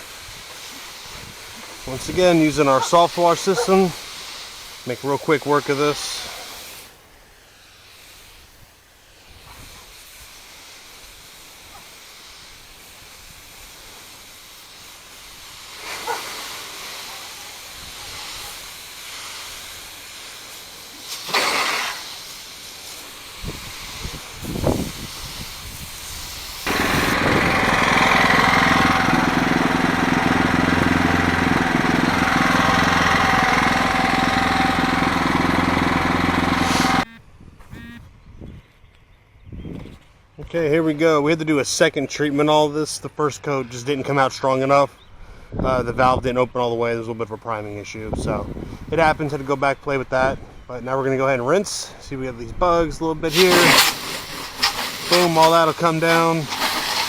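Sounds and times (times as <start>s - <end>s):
spray hissing: 0.0s - 29.0s, 36.3s - 37.1s, 53.3s - 57.0s
loud engine drone: 26.7s - 37.1s.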